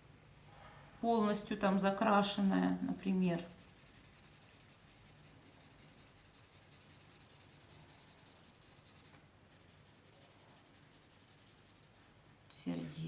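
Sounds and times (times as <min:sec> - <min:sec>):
felt-tip marker scratching on paper: 0:03.4 - 0:12.0.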